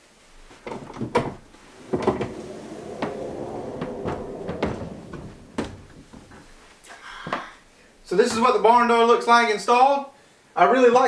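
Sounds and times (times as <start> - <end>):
door rollers rumbling on rail: 1.6 - 6.5.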